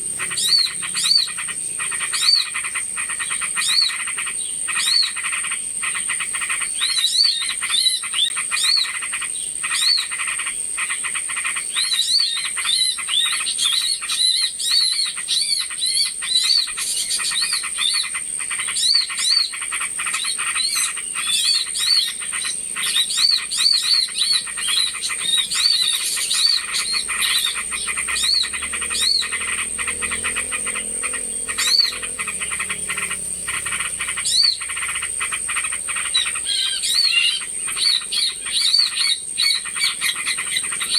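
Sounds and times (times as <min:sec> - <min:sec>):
small birds chirping: 0:00.0 - 0:40.9
high-pitched buzz: 0:26.5 - 0:36.4.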